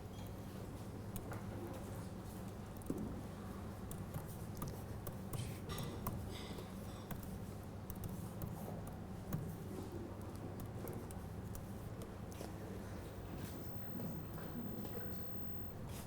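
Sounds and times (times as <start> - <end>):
steady low hum: 11.3 - 16.0.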